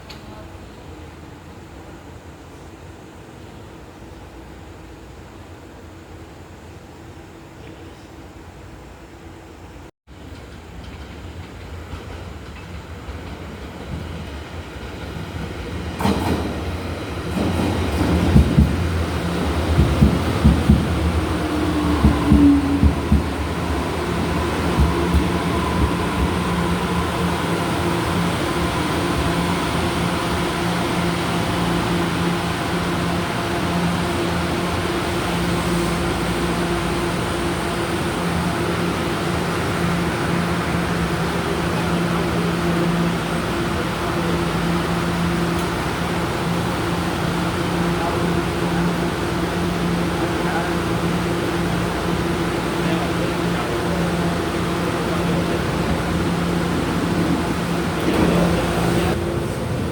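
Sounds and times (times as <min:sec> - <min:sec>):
train running on rails: 0:00.0 - 0:59.9
wheels clacking over rail joints: 0:10.2 - 0:30.2.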